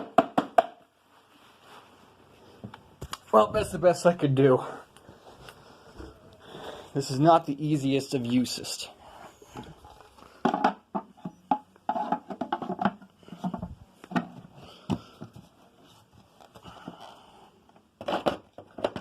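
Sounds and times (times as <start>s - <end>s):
plastic parts clicking and knocking: 9.6s - 15.5s, 18.0s - 19.0s.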